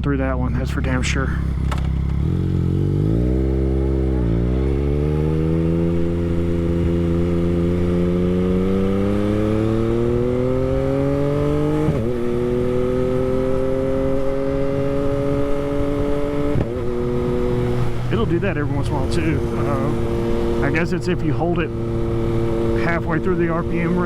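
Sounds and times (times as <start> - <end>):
motorcycle engine accelerating: 0.0 - 24.0
exhaust pop on gear shift: 1.5 - 2.3.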